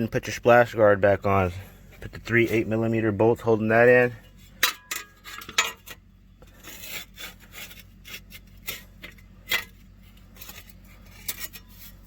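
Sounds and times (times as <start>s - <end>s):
tools and bolts clicking and scraping: 4.2s - 12.0s.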